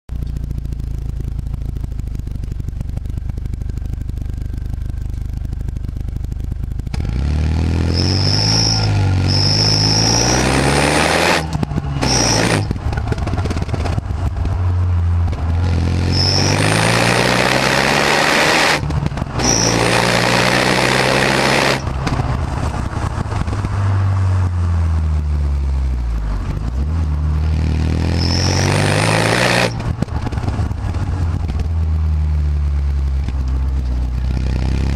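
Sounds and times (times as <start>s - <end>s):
car engine accelerating: 2.9s - 34.9s.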